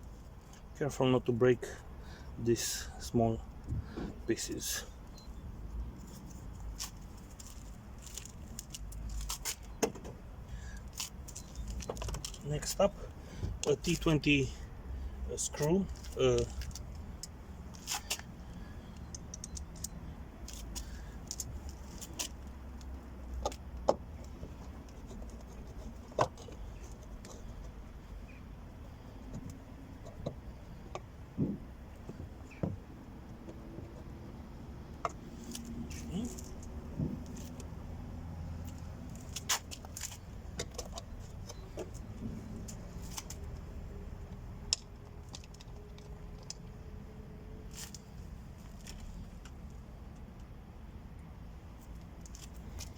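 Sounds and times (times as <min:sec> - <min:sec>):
low steady hum: 0:00.0 - 0:52.9
screwdriver clicks and rattles: 0:19.0 - 0:23.8.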